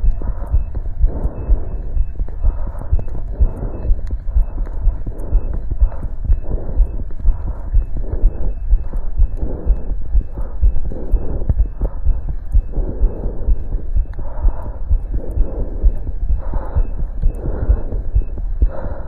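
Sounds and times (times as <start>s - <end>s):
heartbeat through stethoscope: 0.0s - 19.0s.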